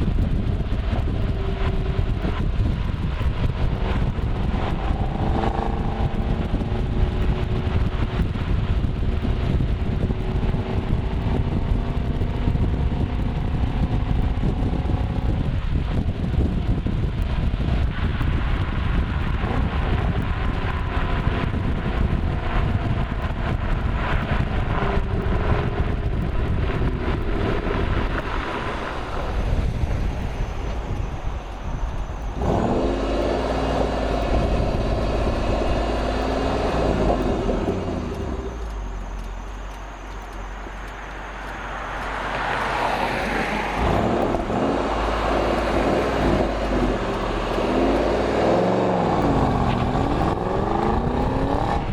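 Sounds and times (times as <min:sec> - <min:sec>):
car exhaust revving: 0:00.0 - 0:51.9
exhaust crackling pops: 0:00.0 - 0:51.9.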